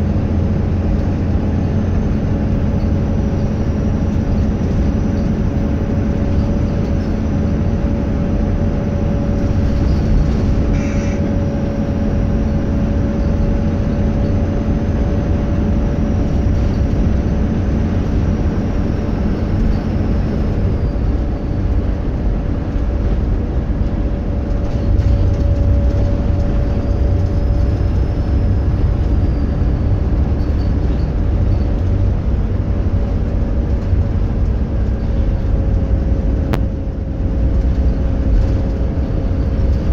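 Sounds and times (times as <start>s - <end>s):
diesel bus engine droning: 0.0s - 39.9s
turbocharger whistle: 10.7s - 11.3s.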